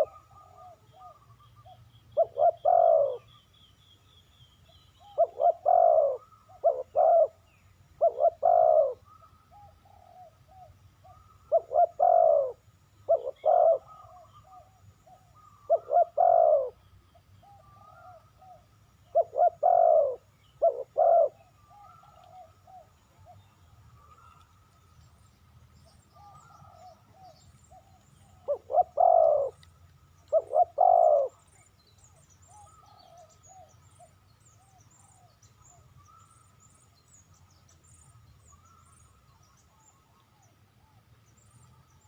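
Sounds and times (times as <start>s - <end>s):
dove cooing: 0.0s - 3.4s, 5.0s - 24.4s, 26.2s - 31.7s.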